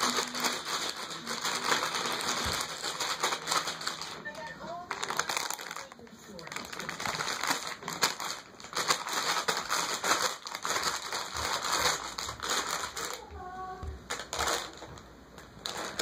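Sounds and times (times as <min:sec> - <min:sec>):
rapid crinkling and crackling: 0:00.0 - 0:16.0.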